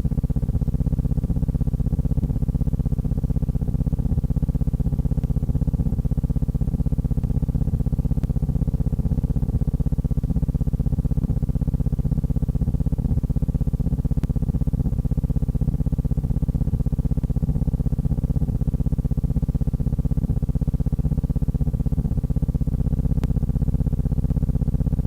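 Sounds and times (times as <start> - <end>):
faint tick: 14.2 - 14.4, 23.2 - 23.4.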